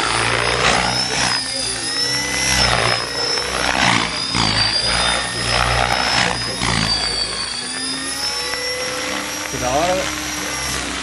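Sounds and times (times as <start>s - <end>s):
model helicopter whine: 0.0s - 11.0s
rotor blades whooshing: 0.0s - 11.0s.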